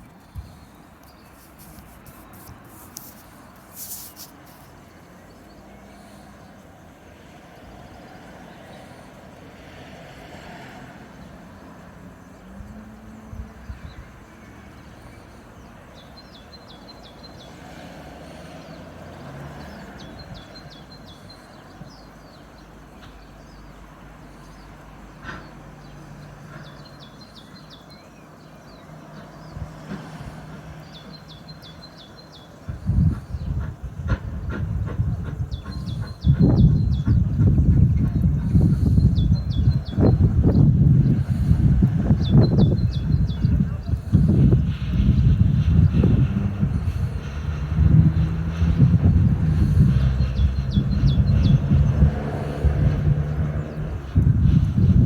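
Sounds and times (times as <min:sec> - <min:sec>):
locomotive engine rumbling: 0:28.3 - 0:55.0.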